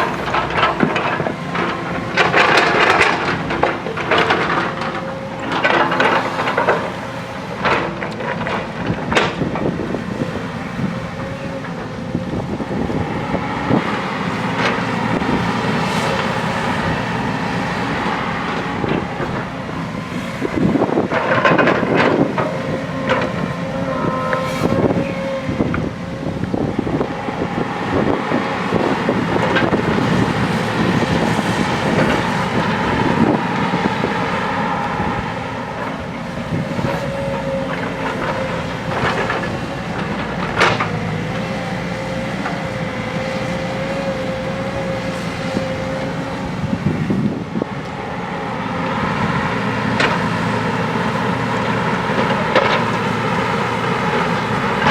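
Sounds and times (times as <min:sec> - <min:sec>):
diesel engine under load: 0:00.0 - 0:54.9
metal clanks and knocks: 0:00.2 - 0:09.7, 0:20.9 - 0:25.9
wavering whine: 0:22.2 - 0:28.3.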